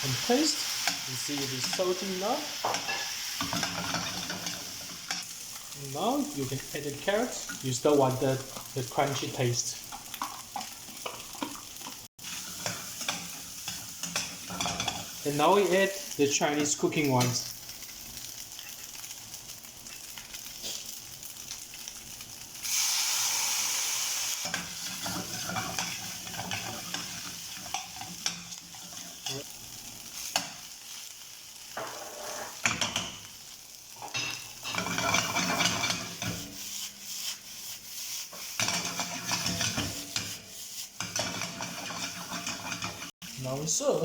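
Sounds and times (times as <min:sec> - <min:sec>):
rice sizzling in a pan: 0:00.0 - 0:44.0
spatula scraping a pan: 0:00.6 - 0:05.3, 0:09.9 - 0:15.8, 0:24.3 - 0:29.5, 0:31.7 - 0:33.2, 0:34.0 - 0:43.1.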